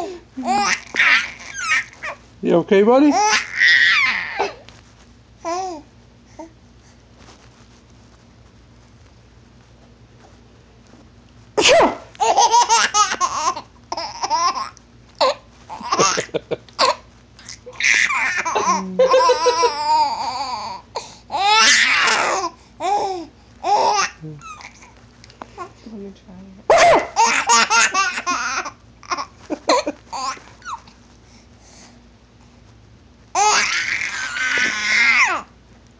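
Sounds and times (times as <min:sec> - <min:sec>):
child babbling: 0:00.4 - 0:01.8, 0:17.7 - 0:20.6
baby laughing: 0:00.4 - 0:02.2, 0:11.6 - 0:23.0, 0:27.2 - 0:30.9, 0:33.4 - 0:35.4
person sneezing: 0:11.6 - 0:12.1
child high-pitched squeal: 0:33.5 - 0:35.4.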